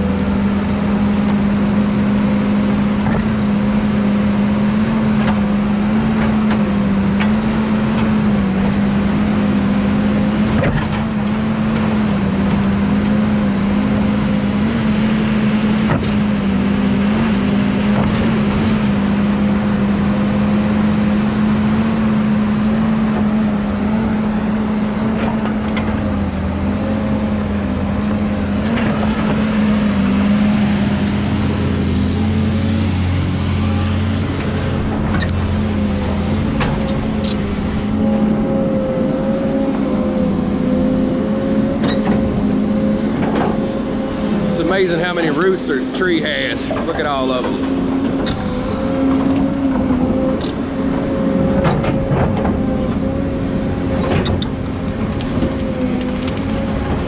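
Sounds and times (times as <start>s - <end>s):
excavator diesel engine running: 0.0s - 57.0s.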